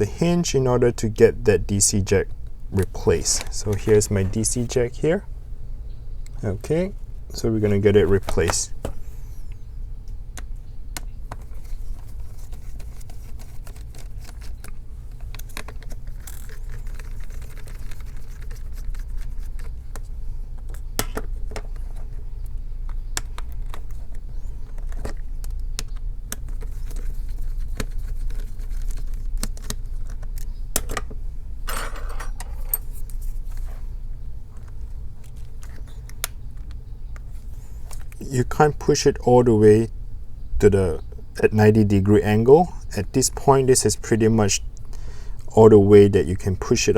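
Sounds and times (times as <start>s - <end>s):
steady low hum: 0.0s - 46.9s
laptop clicks and rattles: 10.4s - 33.2s.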